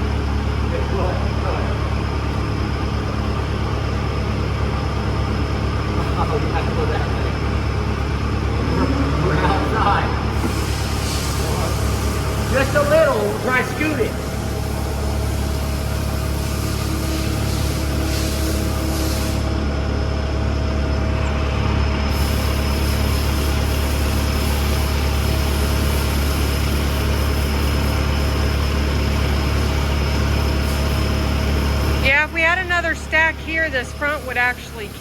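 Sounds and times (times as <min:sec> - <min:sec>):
vehicle engine droning: 0:00.0 - 0:27.4.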